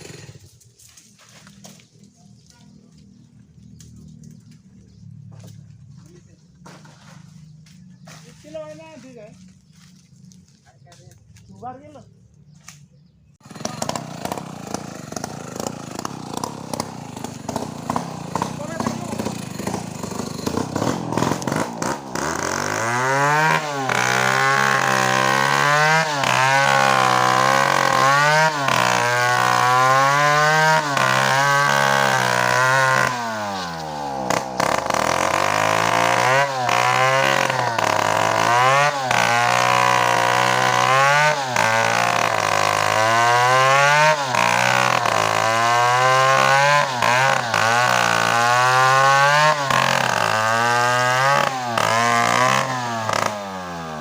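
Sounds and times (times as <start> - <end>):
chainsaw cutting wood: 0.0 - 0.8, 13.4 - 54.0.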